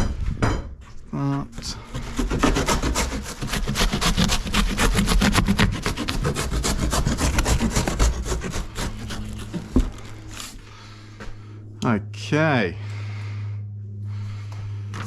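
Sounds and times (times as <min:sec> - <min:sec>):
cardboard box being torn apart: 0:02.2 - 0:10.6
low rumble: 0:09.2 - 0:15.0.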